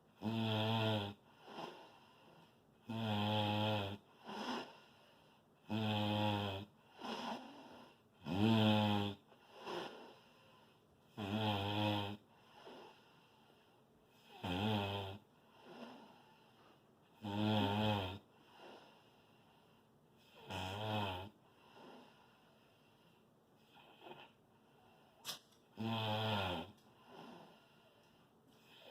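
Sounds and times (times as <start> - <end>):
loud snoring: 0.2 - 2.0, 2.8 - 4.9, 5.6 - 10.3, 11.1 - 13.1, 14.1 - 16.4, 17.2 - 19.1, 20.2 - 22.2, 25.8 - 27.8.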